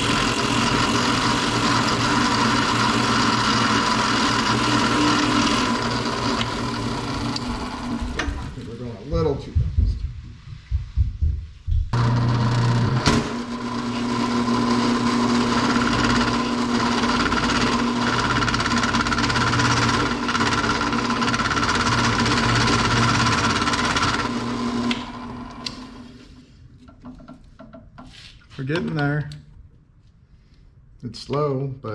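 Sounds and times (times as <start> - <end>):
drill press motor hum: 0.0 - 8.7, 12.0 - 26.2.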